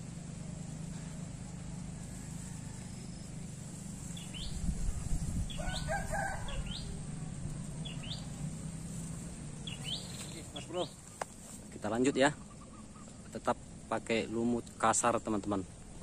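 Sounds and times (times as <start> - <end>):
low background hum: 0.0 - 16.0
bird chirps: 2.0 - 13.5.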